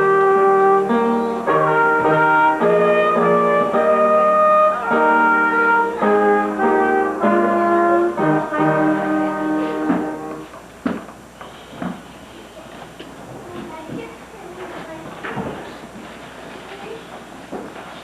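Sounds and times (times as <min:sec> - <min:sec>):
brass band playing held chords: 0:00.0 - 0:10.6.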